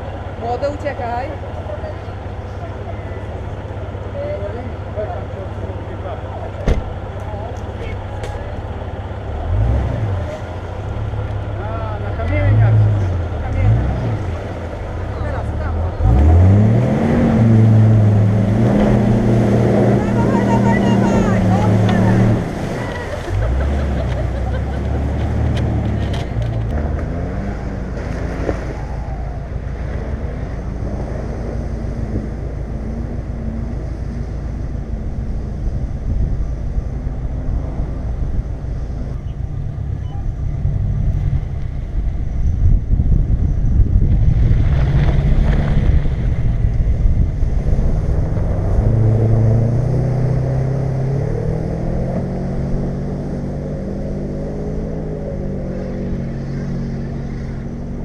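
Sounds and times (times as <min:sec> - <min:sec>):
engine running under load: 0:00.0 - 0:58.0.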